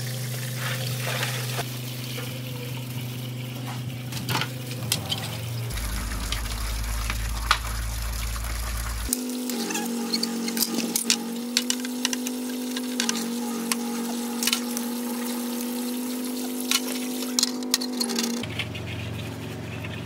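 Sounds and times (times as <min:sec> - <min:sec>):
small motor humming: 0:05.3 - 0:18.4.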